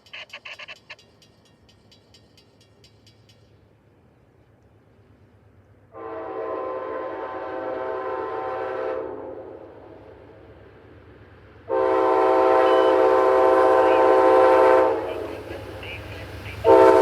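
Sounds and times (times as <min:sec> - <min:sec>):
locomotive air horn chord: 0:05.9 - 0:09.6, 0:11.7 - 0:17.0.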